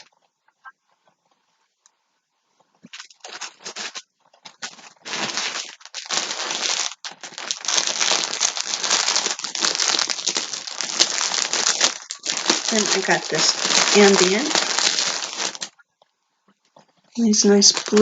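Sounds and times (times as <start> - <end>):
plastic bag crinkling: 2.8 - 15.8, 17.1 - 18.0.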